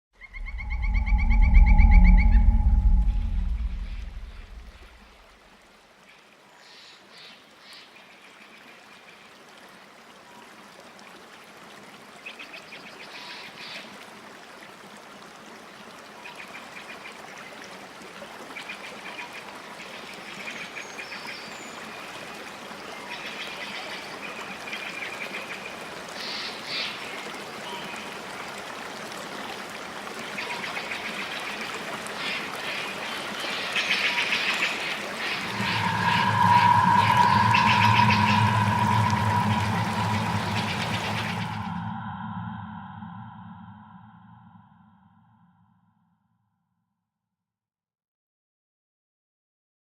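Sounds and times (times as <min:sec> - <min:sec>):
water trickling down strings: 0:21.4 - 0:41.8.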